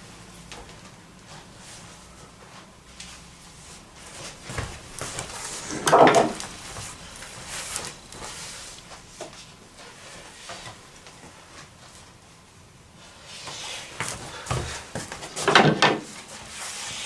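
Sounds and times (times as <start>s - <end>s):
wooden clatter: 4.4s - 8.4s, 15.4s - 16.1s.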